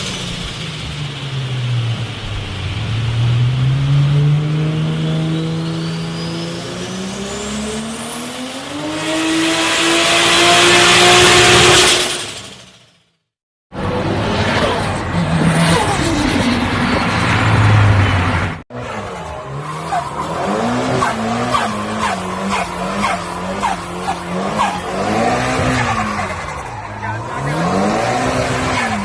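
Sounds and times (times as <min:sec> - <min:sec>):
car engine accelerating: 0:00.0 - 0:12.8, 0:13.7 - 0:29.0
turbo whistle: 0:05.0 - 0:07.0.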